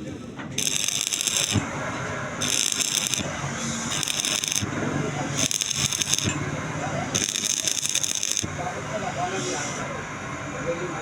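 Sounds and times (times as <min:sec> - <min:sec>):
welding arc crackling: 0:00.6 - 0:08.9.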